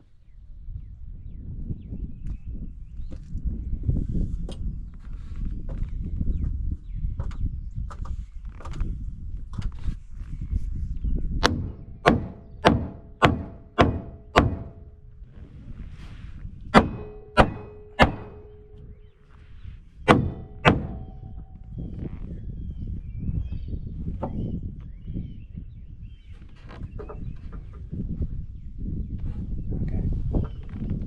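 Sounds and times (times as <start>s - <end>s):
hammer driving nails into wood: 11.4s - 15.0s, 16.8s - 18.8s, 20.1s - 21.5s.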